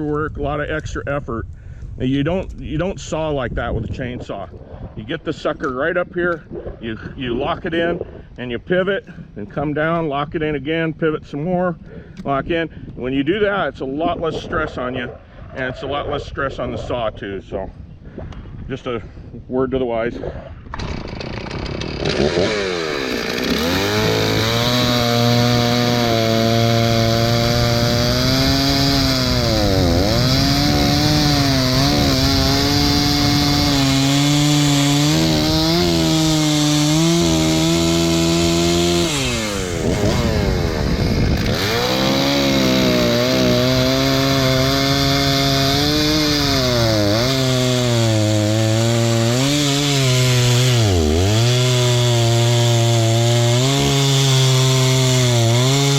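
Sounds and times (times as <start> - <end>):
chainsaw cutting through wood: 20.6 - 55.9.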